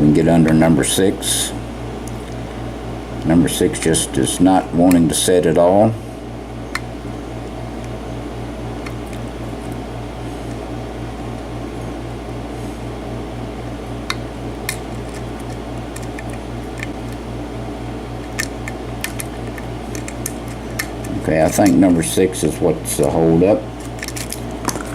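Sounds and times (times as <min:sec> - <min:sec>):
low mechanical hum: 0:00.0 - 0:24.9
lock pick clicking on pins: 0:18.2 - 0:21.8.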